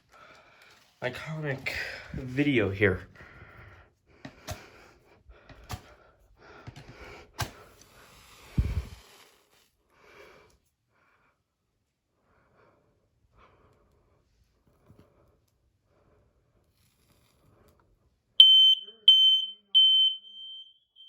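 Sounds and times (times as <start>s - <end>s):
faint soft handling sounds: 0.0s - 3.1s, 13.7s - 18.2s.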